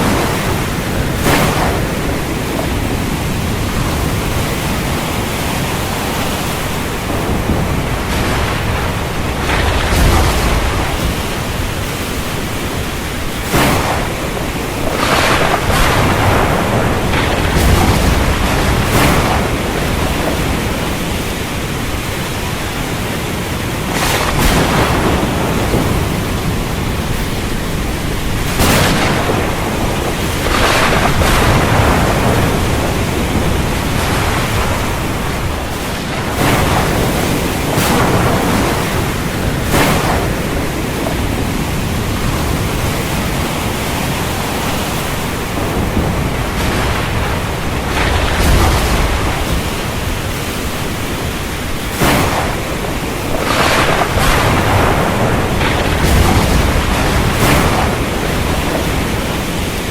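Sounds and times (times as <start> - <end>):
ocean surf: 0.0 - 59.9
storm wind: 0.0 - 59.9.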